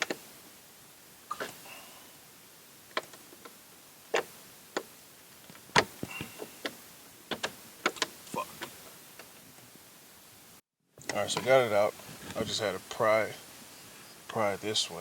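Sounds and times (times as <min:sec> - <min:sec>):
hard plastic clicking and snapping: 0:06.6 - 0:09.3.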